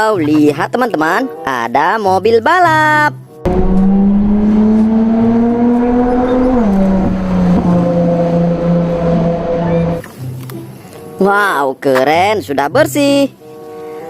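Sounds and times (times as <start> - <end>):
race car engine: 3.5 - 10.0.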